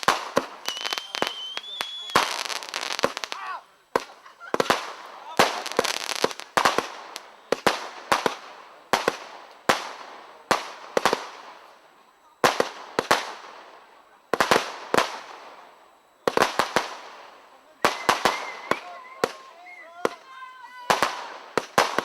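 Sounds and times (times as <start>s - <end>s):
fireworks bangs: 0.0s - 22.0s
fireworks hiss and crackle: 0.0s - 22.0s.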